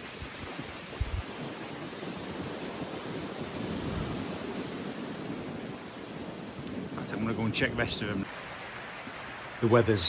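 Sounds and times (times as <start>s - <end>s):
wind buffeting microphone: 0.0s - 10.0s
heavy rain hissing: 3.1s - 10.0s.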